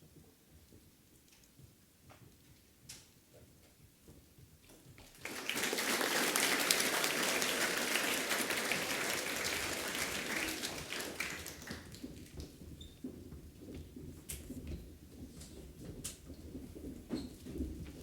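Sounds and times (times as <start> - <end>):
students clapping: 5.2 - 12.4.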